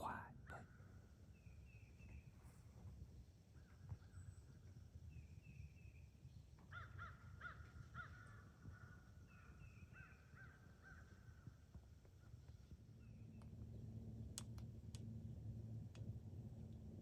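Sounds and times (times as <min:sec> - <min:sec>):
distant crows cawing: 0:06.6 - 0:11.6.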